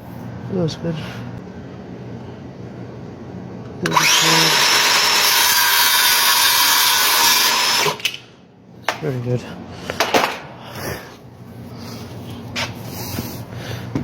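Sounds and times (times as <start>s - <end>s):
power tool whining: 3.8s - 8.2s.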